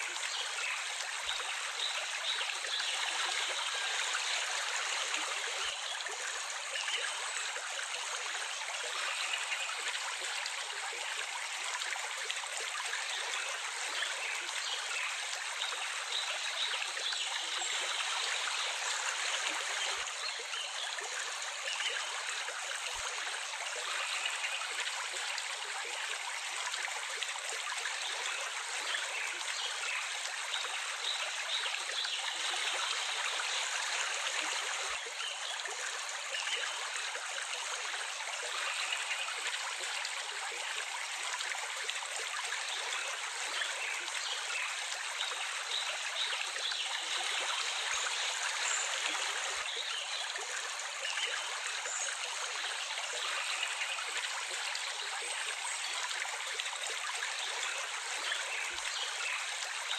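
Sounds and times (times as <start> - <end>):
water flowing in stream: 0.0 - 59.9.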